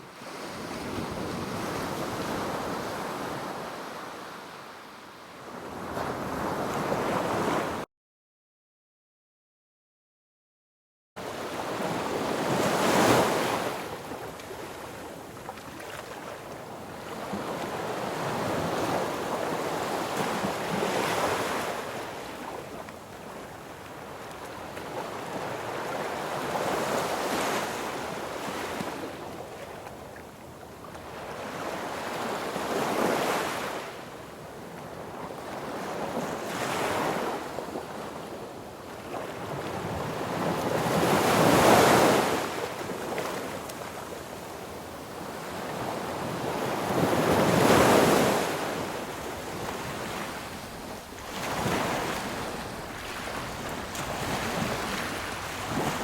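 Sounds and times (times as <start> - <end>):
sea waves breaking on beach: 11.3 - 30.0, 39.0 - 56.0.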